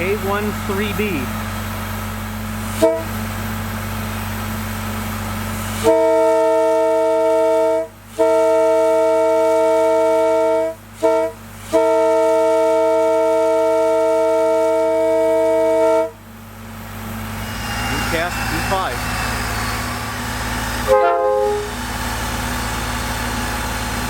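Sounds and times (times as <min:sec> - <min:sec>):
locomotive air horn blasts: 0:00.0 - 0:01.4, 0:02.6 - 0:03.2, 0:05.6 - 0:16.2, 0:17.4 - 0:22.2
steady low hum: 0:00.0 - 0:05.9, 0:16.2 - 0:24.0.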